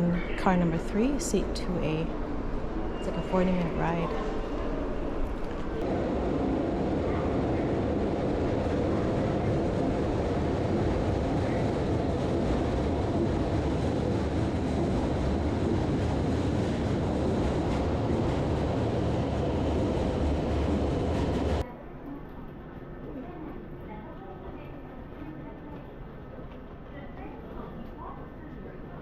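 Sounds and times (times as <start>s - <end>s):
train wheels rumbling on rails: 0.0s - 21.6s.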